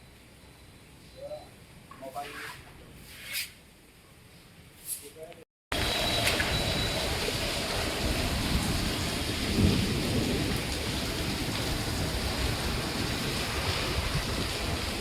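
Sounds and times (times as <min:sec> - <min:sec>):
steady rain: 0:05.7 - 0:15.0
low thunder rumble: 0:05.8 - 0:15.0.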